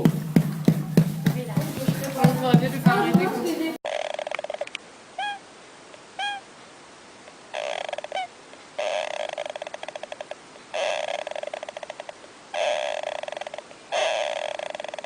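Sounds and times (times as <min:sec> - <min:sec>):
animal upward chirps: 0:06.2 - 0:06.4
animal stuttering chatter: 0:07.5 - 0:15.0.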